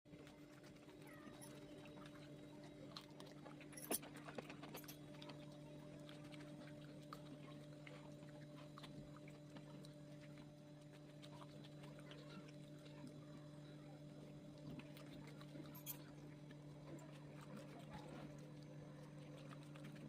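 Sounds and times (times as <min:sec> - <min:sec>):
faint electrical hum: 0:00.1 - 0:20.0.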